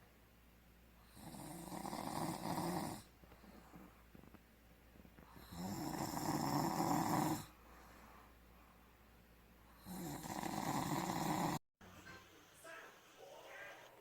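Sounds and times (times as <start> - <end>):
rattling snores: 1.1 - 3.1, 5.4 - 7.5, 9.8 - 11.6.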